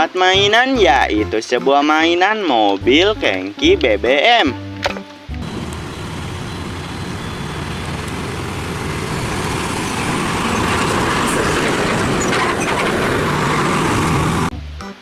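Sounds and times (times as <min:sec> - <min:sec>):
truck engine running: 0:05.4 - 0:14.5
road noise: 0:05.4 - 0:14.6.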